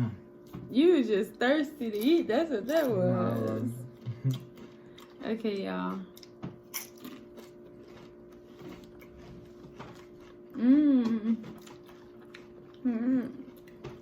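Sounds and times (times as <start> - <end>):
faint hum: 0.0 - 14.0
chewing crunches and clicks: 4.3 - 10.5, 11.4 - 14.0
person humming with enjoyment: 10.5 - 11.6, 12.8 - 13.5.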